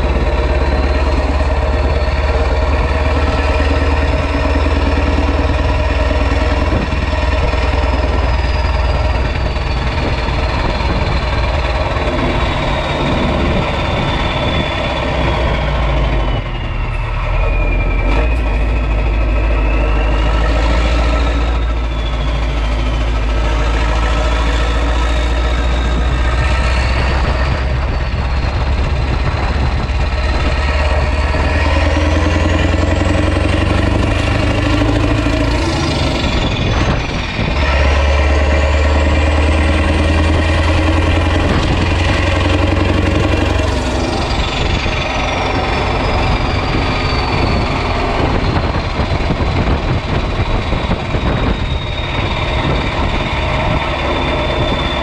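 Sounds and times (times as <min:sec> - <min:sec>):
turbo whistle: 0:00.0 - 0:29.5, 0:50.8 - 0:55.0
diesel engine accelerating: 0:00.0 - 0:55.0.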